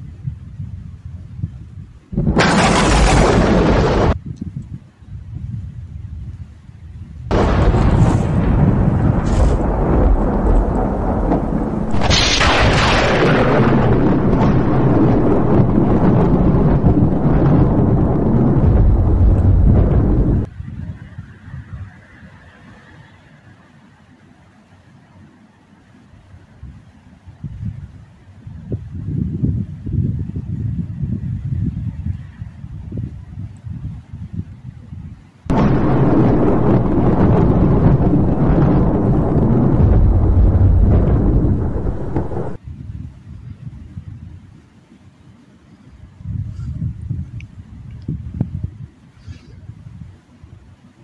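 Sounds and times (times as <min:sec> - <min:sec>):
wind buffeting microphone: 0:00.0 - 0:22.5, 0:26.6 - 0:44.6, 0:46.0 - 0:50.8
thunder crack: 0:02.1 - 0:04.2, 0:07.3 - 0:20.5, 0:35.5 - 0:42.6
thunder rumbling: 0:02.1 - 0:04.2, 0:07.3 - 0:21.7, 0:35.5 - 0:42.6.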